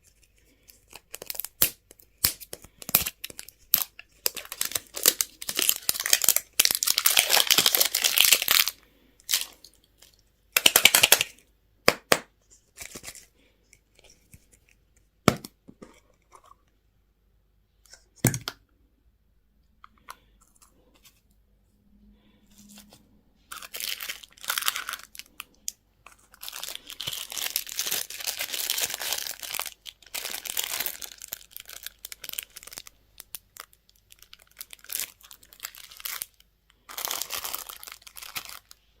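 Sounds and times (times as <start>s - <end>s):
packaging tearing and crinkling: 0.6s - 9.6s, 10.6s - 11.4s, 23.5s - 25.4s, 26.4s - 38.8s.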